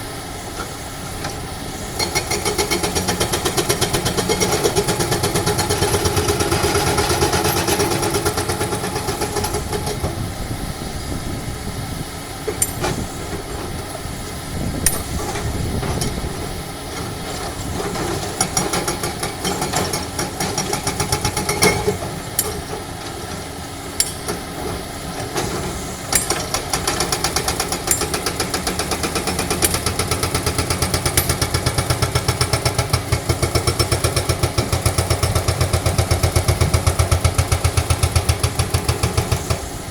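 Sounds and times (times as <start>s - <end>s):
diesel engines pulsing: 0.0s - 39.9s.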